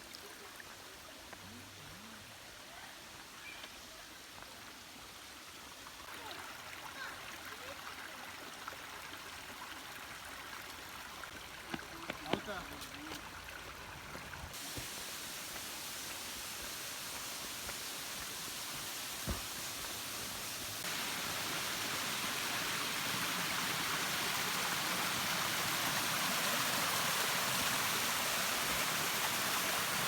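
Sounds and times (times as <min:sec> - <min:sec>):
flowing water rushing: 0:04.3 - 0:30.0
brief knock: 0:19.2 - 0:19.5.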